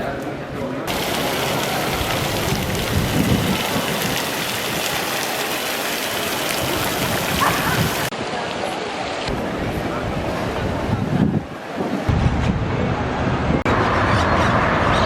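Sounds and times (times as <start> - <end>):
falling water hiss: 0.9 - 8.1.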